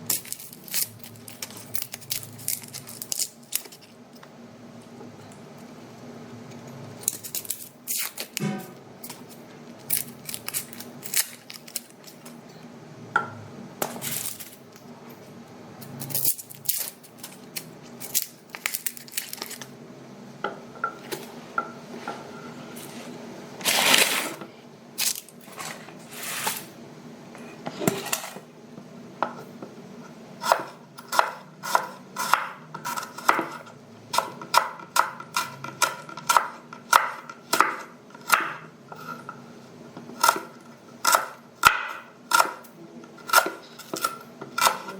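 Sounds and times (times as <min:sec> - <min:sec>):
onion peeling clicks and scrapes: 0:00.1 - 0:03.8, 0:07.0 - 0:08.4, 0:09.0 - 0:12.0
knife chopping onion: 0:30.4 - 0:39.4, 0:40.0 - 0:44.9.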